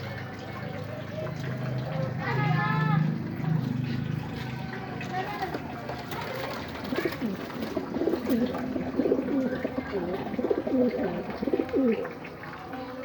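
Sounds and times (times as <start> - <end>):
dove cooing: 6.0 - 12.2.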